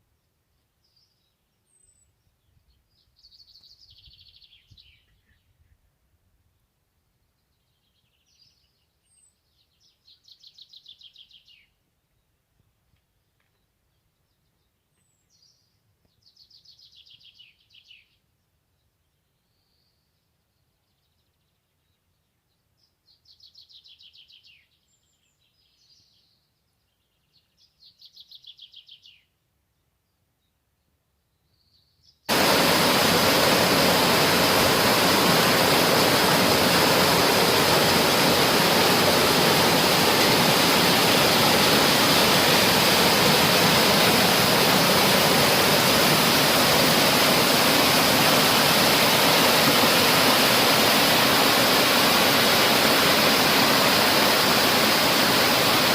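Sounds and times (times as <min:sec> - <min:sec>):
waterfall rushing: 0:32.3 - 0:55.9.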